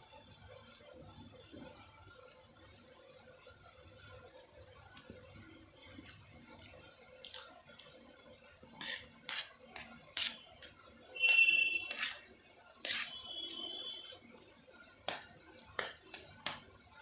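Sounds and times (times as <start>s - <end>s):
slurping and chewing: 5.9s - 8.0s.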